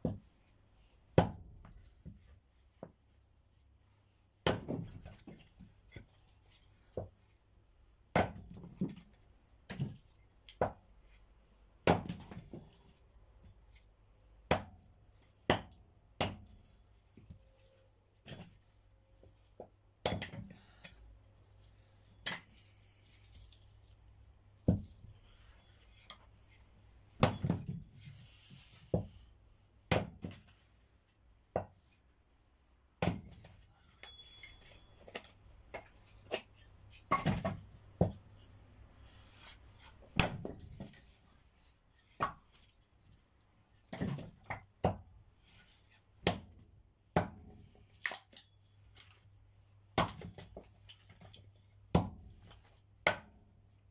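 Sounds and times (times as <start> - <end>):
logs knocking and thudding: 4.4 - 5.6, 27.2 - 27.9.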